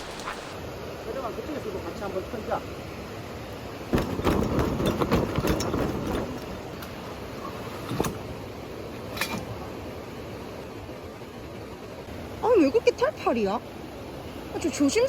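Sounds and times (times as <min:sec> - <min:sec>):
wet fabric flapping: 0:00.0 - 0:00.6.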